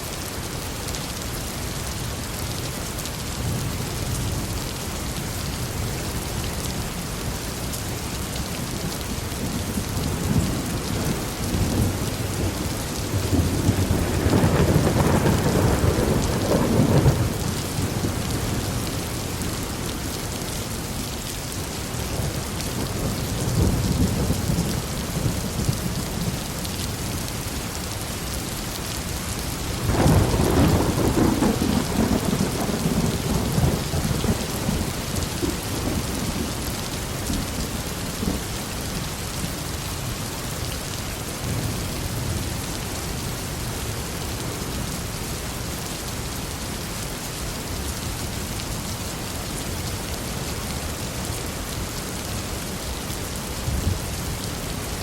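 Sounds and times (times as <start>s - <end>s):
steady rain: 0.0s - 55.0s
thunder rolling: 13.3s - 18.2s.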